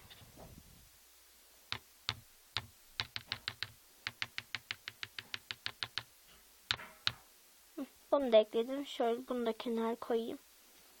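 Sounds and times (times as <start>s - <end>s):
stick tapping against a container: 1.7s - 6.1s.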